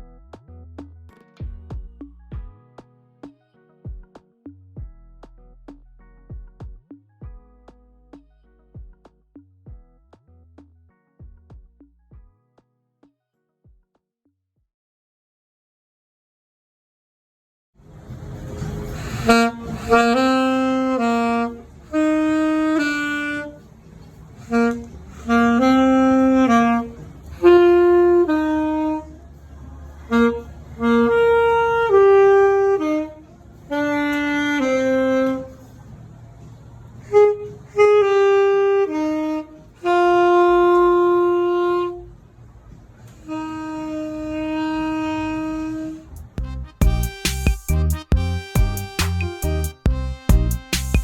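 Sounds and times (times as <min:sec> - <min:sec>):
instrumental lead melody: 0:43.3 - 0:51.0.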